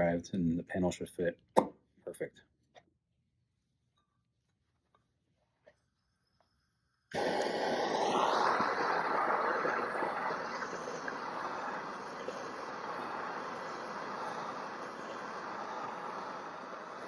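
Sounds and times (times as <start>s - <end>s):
gas torch burning hiss: 7.1s - 17.0s
gas torch igniting with whistle: 7.1s - 17.0s.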